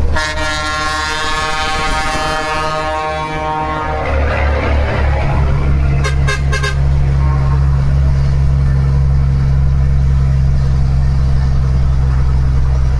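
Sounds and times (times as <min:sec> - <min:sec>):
truck horn toots: 0:00.0 - 0:09.1
truck diesel engine droning: 0:00.0 - 0:12.9.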